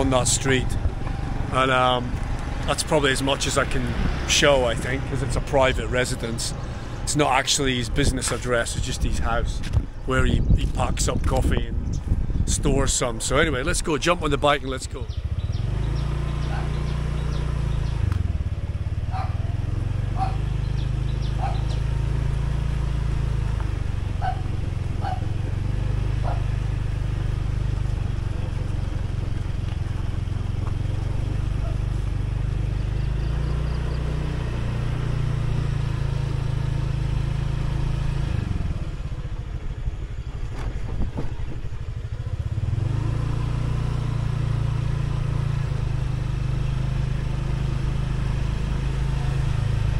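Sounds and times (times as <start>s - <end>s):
road and wind noise: 0.0s - 49.9s
motorbike engine running: 14.8s - 49.9s.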